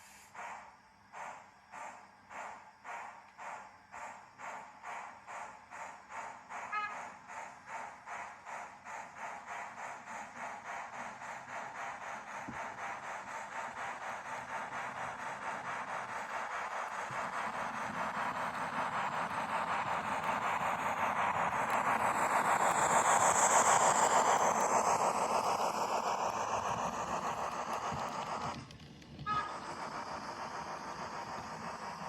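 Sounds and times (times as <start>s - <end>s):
model locomotive steam chuffs: 0.0s - 32.0s
short whistle-like squeal: 4.5s - 7.6s, 29.2s - 32.0s.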